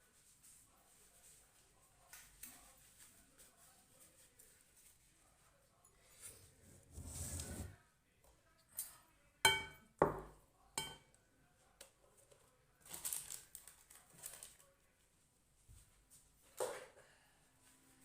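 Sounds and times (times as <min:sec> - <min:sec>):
utensils scraping and rustling: 0:06.1 - 0:07.8
dishes clinking: 0:09.5 - 0:11.1.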